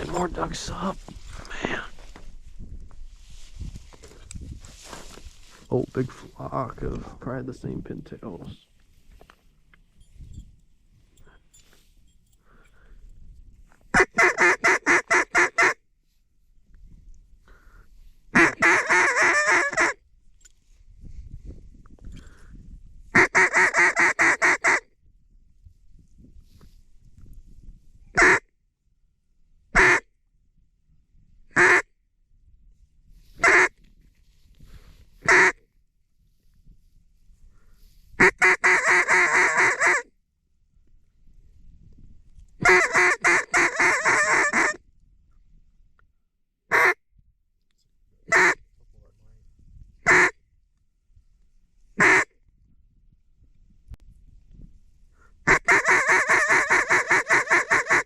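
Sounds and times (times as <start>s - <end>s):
duck call quacks: 13.9s - 15.8s, 18.4s - 20.0s, 23.1s - 24.8s, 28.2s - 28.5s, 29.8s - 30.1s, 31.5s - 31.9s, 33.4s - 33.7s, 35.2s - 35.6s, 38.2s - 40.1s, 42.6s - 44.8s, 46.7s - 47.0s, 48.3s - 48.6s, 50.0s - 50.4s, 52.0s - 52.3s, 55.4s - 58.0s.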